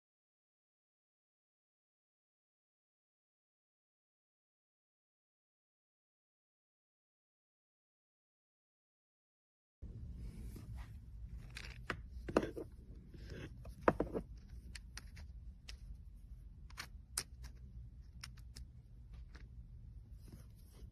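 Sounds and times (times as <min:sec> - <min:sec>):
steady low hum: 0:09.8 - 0:20.9.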